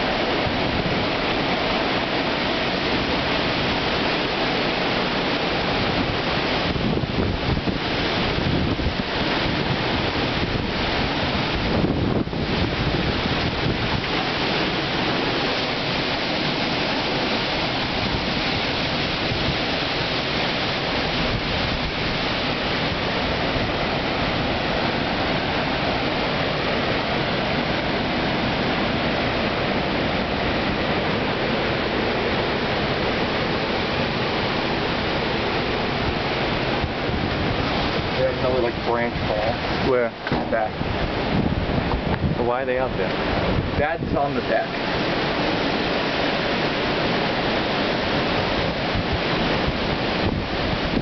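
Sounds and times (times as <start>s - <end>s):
strong wind rushing: 0.0s - 51.0s.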